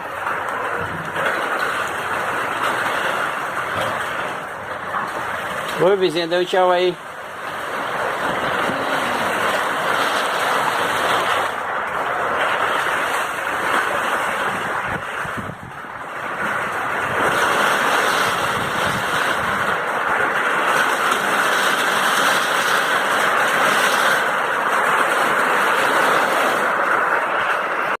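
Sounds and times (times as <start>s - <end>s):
heavy rain hissing: 0.0s - 28.0s
wind buffeting microphone: 7.0s - 21.8s.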